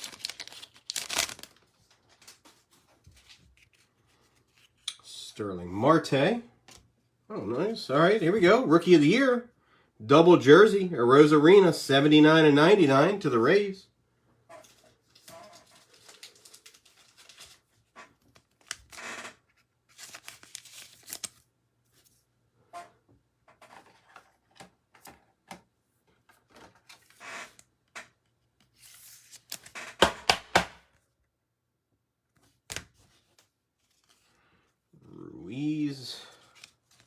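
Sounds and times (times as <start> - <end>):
foil wrapper rustling and crinkling: 0.0 - 4.8, 15.0 - 21.5.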